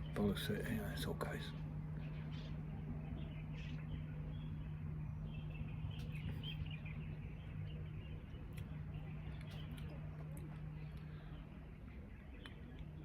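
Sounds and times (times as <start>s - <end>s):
birds chirping: 0.0s - 13.0s
low electrical hum: 0.0s - 13.0s.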